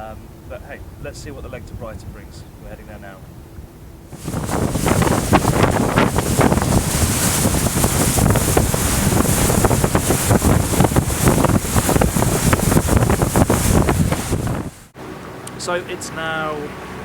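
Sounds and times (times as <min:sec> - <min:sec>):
wind buffeting microphone: 0:00.6 - 0:15.0
water rushing along hull: 0:04.1 - 0:17.0.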